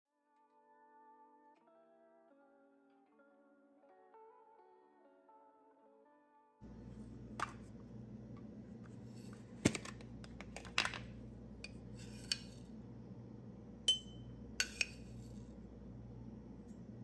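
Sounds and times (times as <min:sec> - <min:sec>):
faint low hum: 0:06.6 - 0:17.0
dishes and utensils clinking: 0:10.7 - 0:12.6, 0:13.9 - 0:15.4
china ringing: 0:13.9 - 0:15.0.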